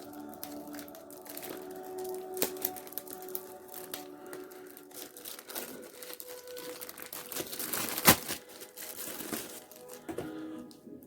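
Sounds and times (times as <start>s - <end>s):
packet crinkling and crackling: 0.0s - 10.8s.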